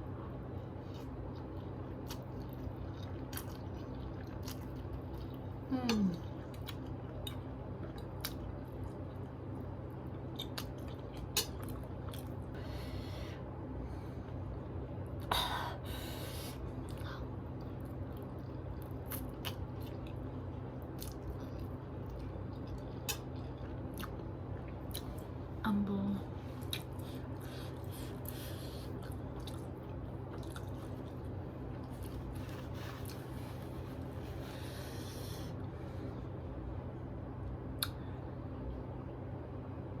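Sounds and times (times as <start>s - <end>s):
steady low hum: 0.0s - 40.0s
person chewing noodles: 0.7s - 12.7s, 16.1s - 25.4s, 26.5s - 35.7s
wet mouth clicks and smacks: 37.8s - 38.0s.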